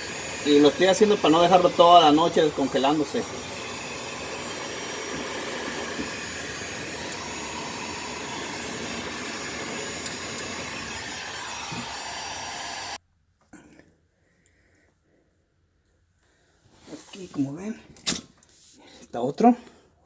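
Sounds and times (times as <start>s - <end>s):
electric heater blowing air: 0.0s - 13.0s.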